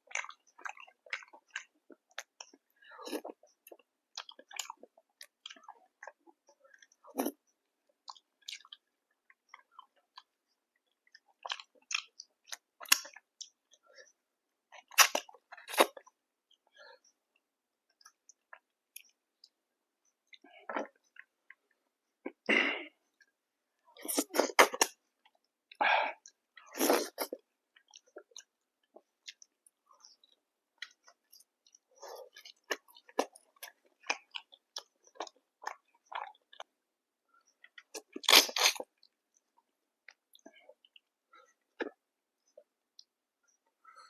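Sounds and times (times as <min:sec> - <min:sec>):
chewing and crunching: 0:00.0 - 0:17.0, 0:24.0 - 0:36.8, 0:37.4 - 0:42.0.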